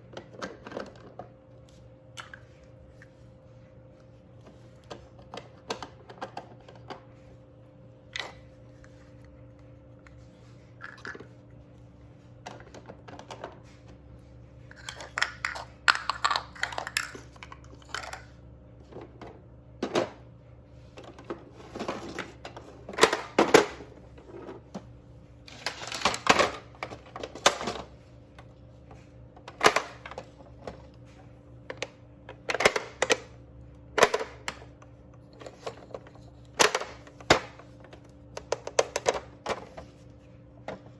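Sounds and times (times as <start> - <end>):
faint steady hum: 0.0 - 40.9
plastic pieces clicking and clattering: 14.7 - 18.4.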